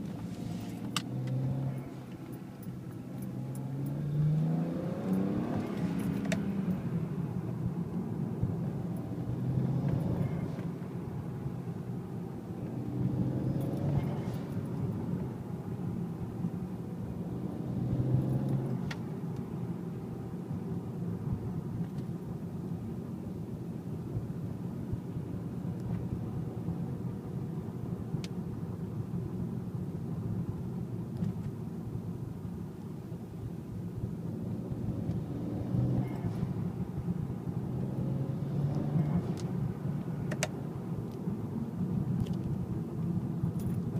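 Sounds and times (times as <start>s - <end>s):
car engine running while driving: 0.0s - 43.9s.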